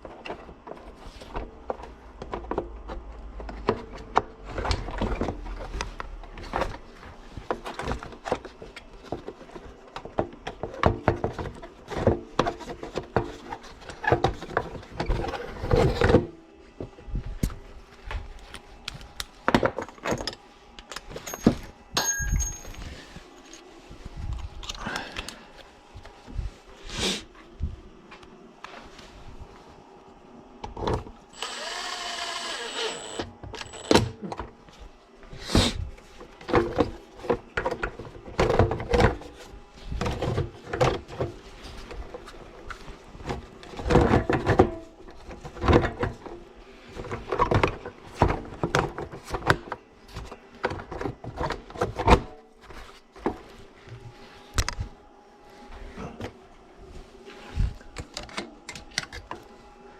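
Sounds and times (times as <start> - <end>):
tools clinking on a workbench: 19.9 - 23.6
small power tool whirring: 31.3 - 34.0.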